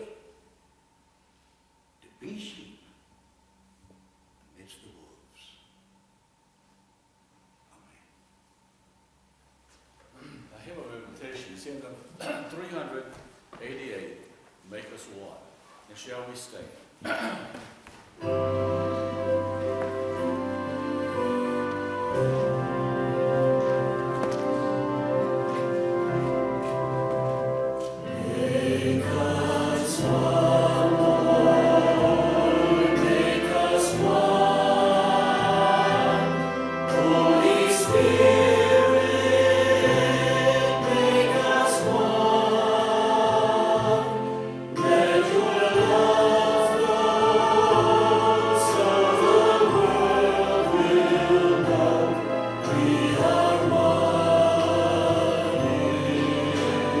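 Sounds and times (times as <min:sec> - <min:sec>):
congregation singing a hymn: 0:18.2 - 0:57.0
instrumental accompaniment: 0:18.2 - 0:57.0.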